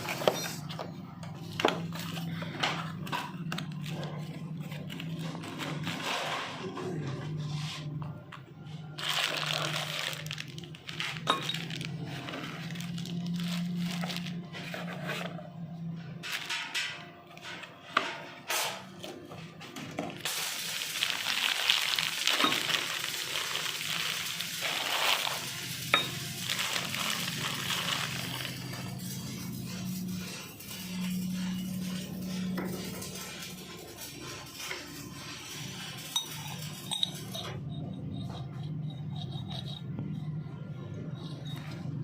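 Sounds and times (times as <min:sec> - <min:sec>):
metal tools clinking: 0:10.9 - 0:13.5, 0:35.9 - 0:40.0.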